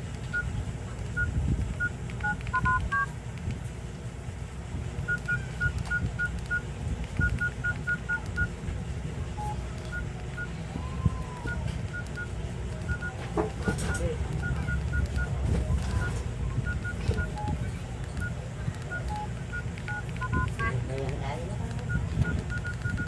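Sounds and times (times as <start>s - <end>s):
phone keypad beeps: 0.3s - 3.1s, 5.1s - 8.6s, 9.4s - 10.6s, 11.4s - 20.9s, 21.7s - 23.0s.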